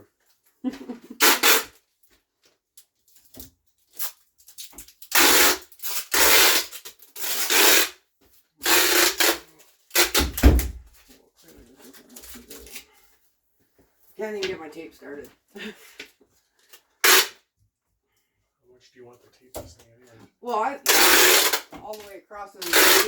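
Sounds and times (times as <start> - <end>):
tape tearing off a roll: 1.1 - 1.9, 3.4 - 8.0, 8.6 - 10.7, 16.7 - 17.5, 20.8 - 23.0.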